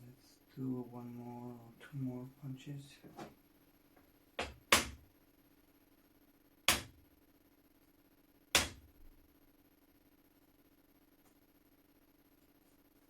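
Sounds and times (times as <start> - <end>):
hammer striking pin punch: 4.4 - 5.0, 6.7 - 7.0, 8.6 - 8.9.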